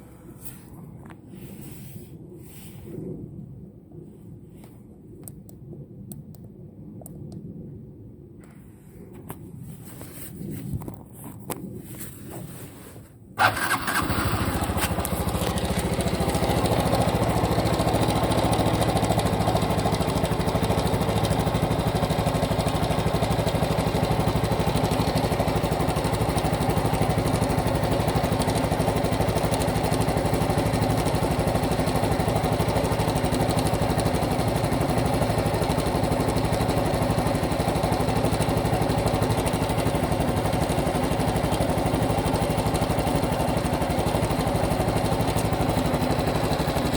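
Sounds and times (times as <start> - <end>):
motorcycle engine starting and idling: 13.4 - 46.9.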